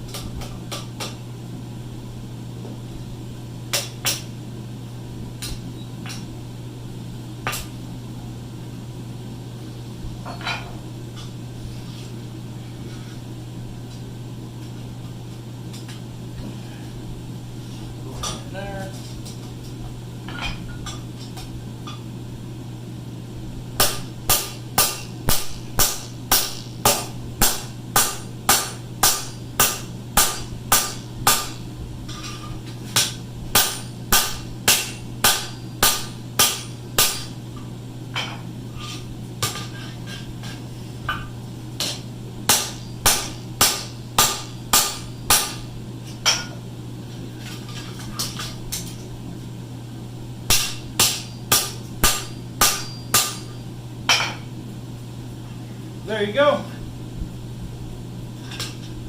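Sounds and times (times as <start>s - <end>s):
hammer striking steel: 23.8s - 37.4s, 41.1s - 46.5s, 50.5s - 54.4s.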